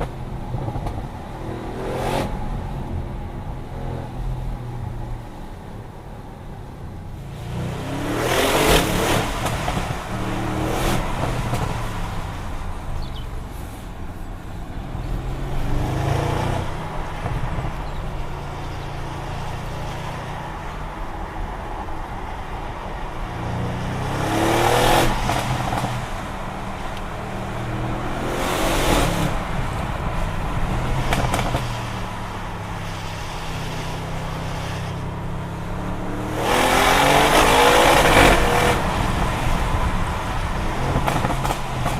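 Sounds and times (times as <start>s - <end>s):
car engine revving: 7.4s - 12.7s, 15.1s - 18.0s, 23.6s - 41.9s.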